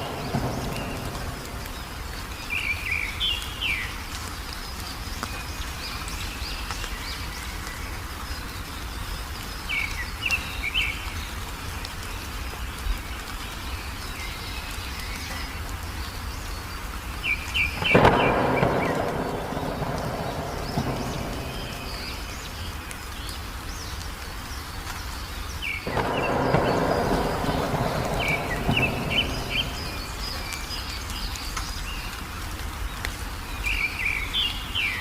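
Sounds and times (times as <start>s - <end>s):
loud noisy burst: 0.0s - 2.6s, 17.8s - 22.6s, 25.9s - 30.8s
low background rumble: 0.0s - 2.9s, 17.9s - 23.0s, 25.9s - 31.3s
songbirds chirping: 0.0s - 35.0s.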